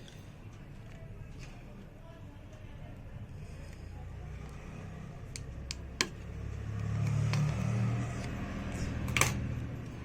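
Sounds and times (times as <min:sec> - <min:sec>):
motor vehicle engine hum: 0:03.2 - 0:10.0.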